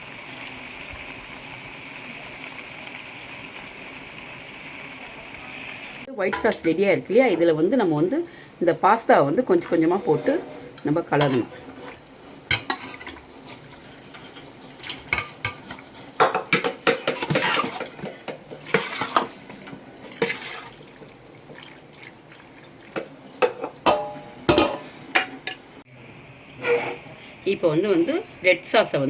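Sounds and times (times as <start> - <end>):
spoon scraping a cooking pan: 9.2 - 21.7, 22.5 - 25.7.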